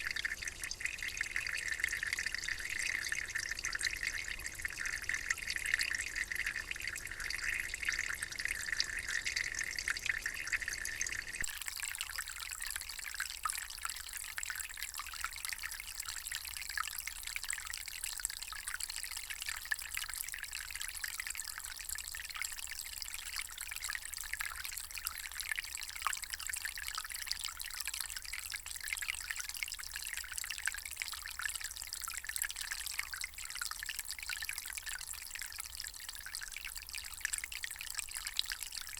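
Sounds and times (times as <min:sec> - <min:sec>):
water trickling and dripping: 0:00.0 - 0:38.9.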